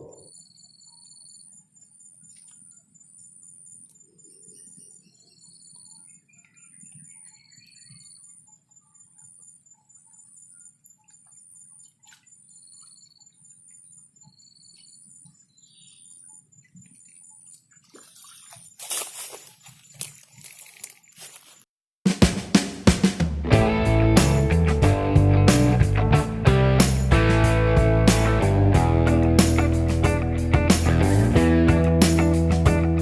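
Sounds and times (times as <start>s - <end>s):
insects chirping: 0.0s - 21.6s.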